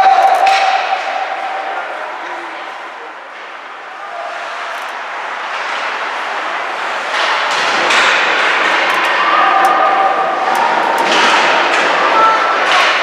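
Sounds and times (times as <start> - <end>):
hockey sticks and puck knocking: 0.0 - 1.2
skating and arena noise: 0.0 - 13.0.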